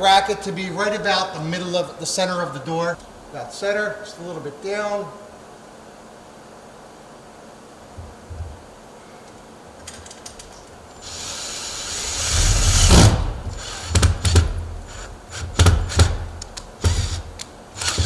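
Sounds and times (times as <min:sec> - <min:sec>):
power drill driving a screw: 0:11.0 - 0:18.0
knocks and rattles: 0:12.0 - 0:18.0.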